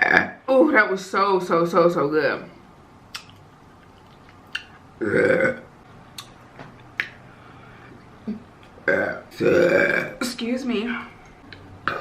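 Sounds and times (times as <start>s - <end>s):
man belching: 5.0s - 5.7s, 8.8s - 10.2s.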